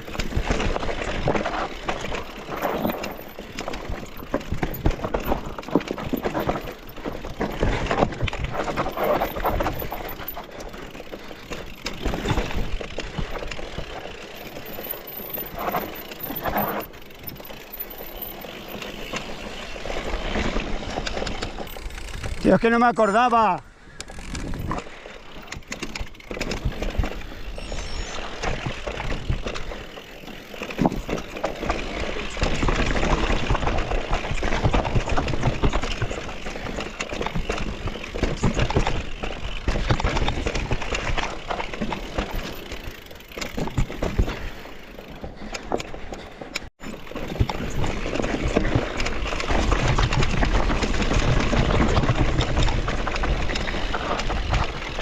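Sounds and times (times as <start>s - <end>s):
bike tyres rushing on dirt: 0.0s - 55.0s.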